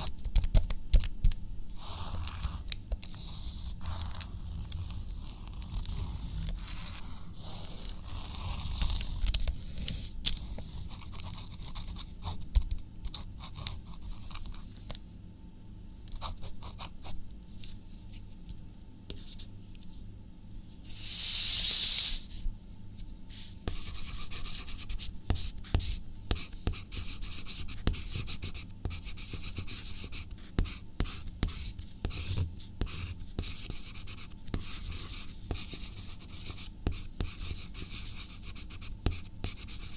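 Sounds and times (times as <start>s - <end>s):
handwriting on paper: 1.8s - 14.6s, 23.7s - 39.9s.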